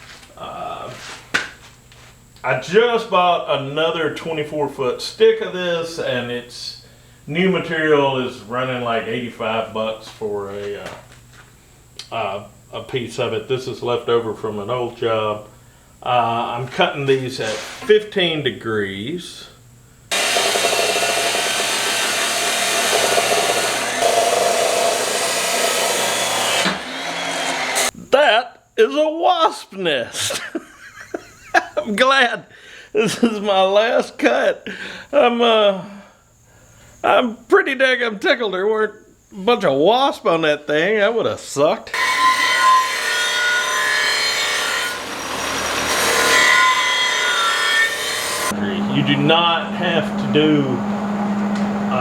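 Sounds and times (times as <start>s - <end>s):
power saw cutting metal tubing: 20.1s - 27.9s, 41.9s - 52.0s.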